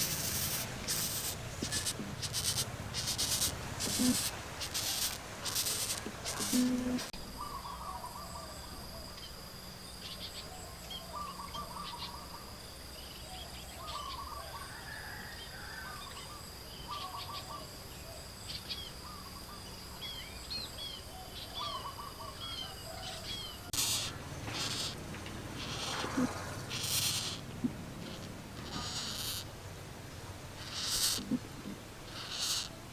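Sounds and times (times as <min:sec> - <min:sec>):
high insect buzz: 0:00.0 - 0:07.2, 0:23.7 - 0:29.6, 0:30.5 - 0:32.9
birds chirping trills: 0:00.0 - 0:08.2, 0:18.6 - 0:29.8, 0:30.5 - 0:32.9.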